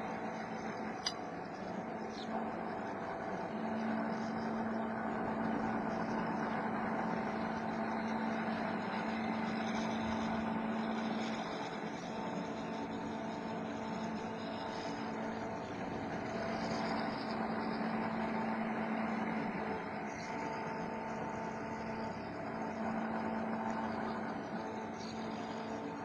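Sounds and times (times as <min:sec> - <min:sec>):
machine running with motor tones: 0:00.0 - 0:26.0.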